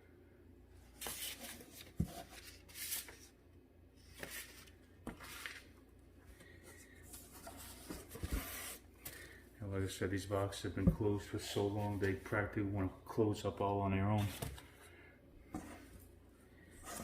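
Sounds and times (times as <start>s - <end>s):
paper and cardboard rustling: 0.9s - 3.4s, 7.0s - 9.2s.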